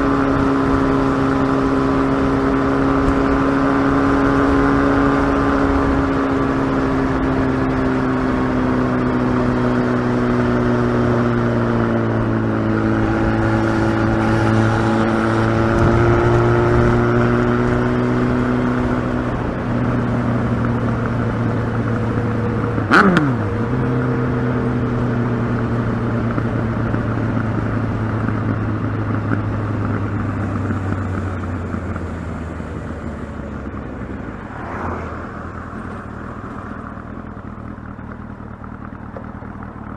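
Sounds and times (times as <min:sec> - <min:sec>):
motorcycle engine running: 0:00.0 - 0:39.9
sharp downward sweeping sound: 0:12.8 - 0:17.1.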